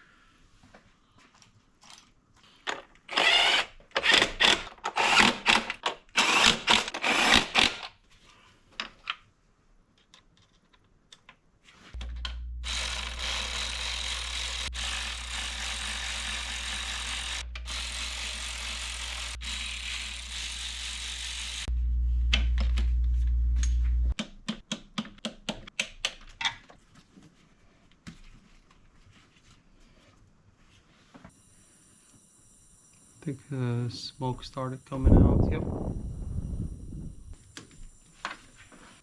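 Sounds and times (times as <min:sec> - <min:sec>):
smoke machine hum and hiss: 0:32.9 - 0:36.4.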